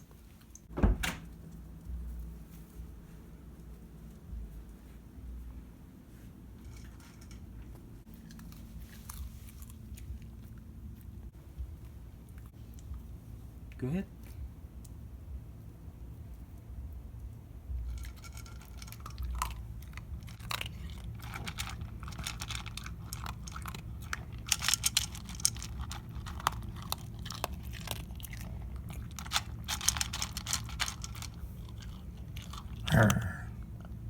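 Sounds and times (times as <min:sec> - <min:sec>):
dog chewing and crunching food: 0:06.1 - 0:13.3, 0:16.2 - 0:34.0.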